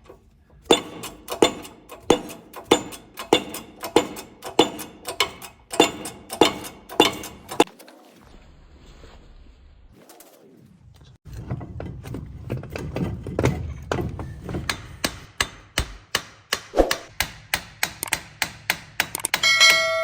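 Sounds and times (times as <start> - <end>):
hammer striking metal: 0.0 - 7.7, 13.4 - 20.0
metal part ringing: 0.0 - 7.7, 19.2 - 20.0.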